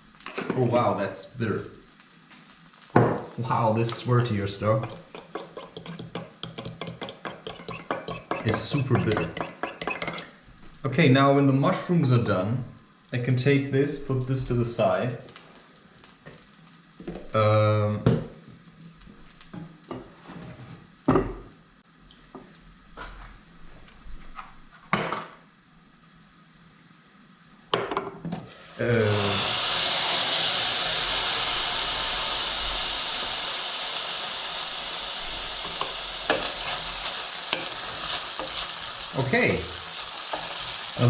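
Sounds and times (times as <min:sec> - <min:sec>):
eggs sizzling in frying pan: 0:00.0 - 0:23.6, 0:24.6 - 0:41.0
kitchen utensils and pans clinking: 0:04.7 - 0:10.3.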